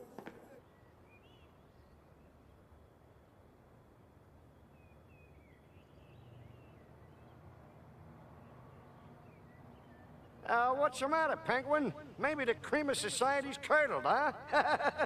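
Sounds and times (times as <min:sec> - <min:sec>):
faint bird chirps: 0:00.0 - 0:02.9.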